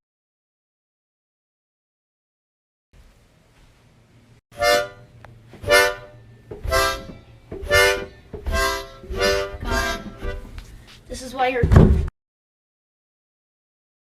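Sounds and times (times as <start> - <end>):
reedy tooting notes: 4.6 - 10.5.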